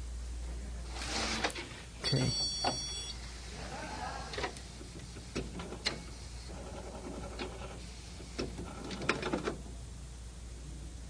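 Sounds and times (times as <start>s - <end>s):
printer motor whirring: 3.3s - 9.6s.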